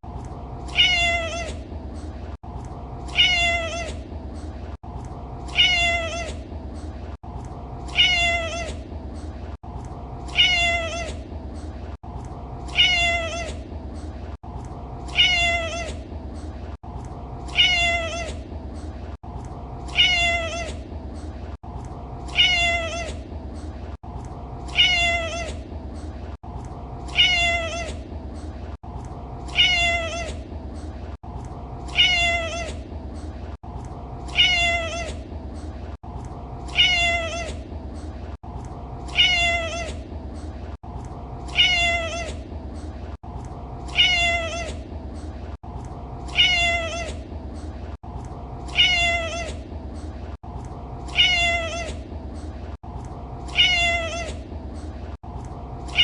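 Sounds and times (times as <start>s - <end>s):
cat meowing: 0.7s - 1.6s, 3.1s - 4.0s, 5.5s - 6.4s, 7.9s - 8.8s, 10.3s - 11.2s, 12.7s - 13.6s, 15.1s - 16.0s, 17.5s - 18.4s, 19.9s - 20.8s, 22.3s - 23.2s, 24.7s - 25.6s, 27.1s - 28.0s, 29.5s - 30.4s, 31.9s - 32.8s, 34.3s - 35.2s, 36.7s - 37.6s, 39.1s - 40.0s, 41.5s - 42.4s, 43.9s - 44.8s, 46.3s - 47.2s, 48.7s - 49.6s, 51.1s - 52.0s, 53.5s - 54.4s.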